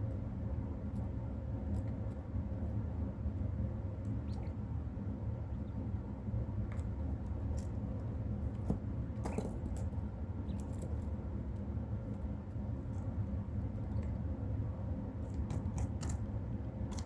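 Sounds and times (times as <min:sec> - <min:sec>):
steady low hum: 0:00.0 - 0:17.0
quail clicks and squeaks: 0:04.1 - 0:04.6.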